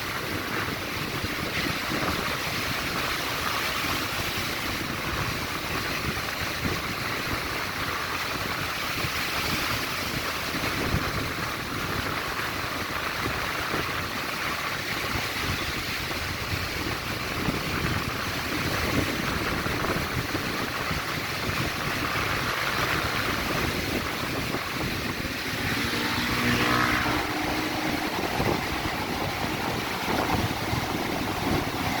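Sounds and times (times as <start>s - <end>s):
big waves crashing: 0.0s - 32.0s
heavy rain: 0.0s - 32.0s
strong wind: 0.0s - 32.0s
wind buffeting microphone: 0.0s - 32.0s
motor engine humming past: 14.6s - 32.0s.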